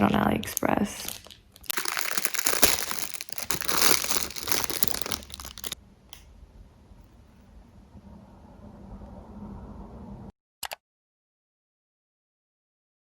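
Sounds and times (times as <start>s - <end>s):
packaging crinkling: 1.1s - 5.8s.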